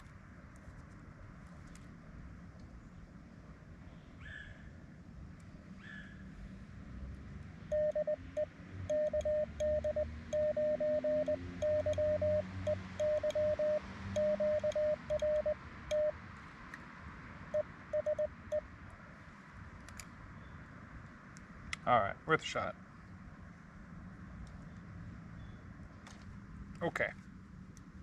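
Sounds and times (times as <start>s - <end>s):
morse code tone: 7.7s - 16.1s, 17.5s - 18.6s.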